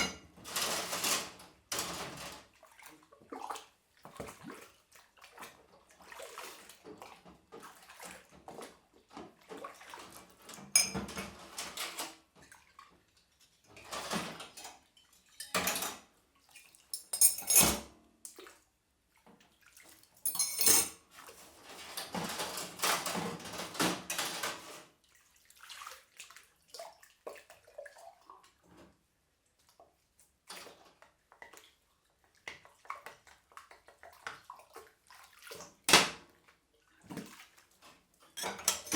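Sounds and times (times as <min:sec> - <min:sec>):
dishes clattering: 0:00.0 - 0:02.3, 0:10.6 - 0:12.0, 0:15.4 - 0:16.0, 0:17.0 - 0:17.9, 0:20.3 - 0:21.0, 0:38.4 - 0:38.9
water splashing in sink: 0:00.0 - 0:38.9.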